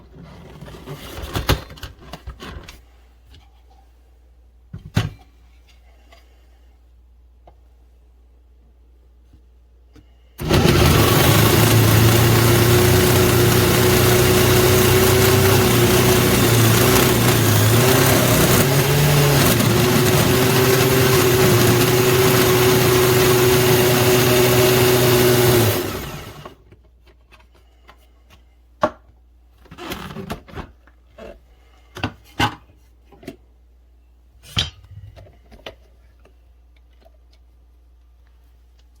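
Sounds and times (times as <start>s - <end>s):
blender motor running: 10.4s - 26.6s.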